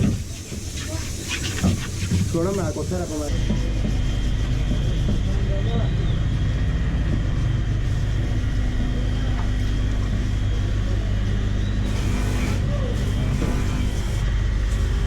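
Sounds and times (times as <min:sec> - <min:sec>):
low machine hum: 0:02.3 - 0:15.0.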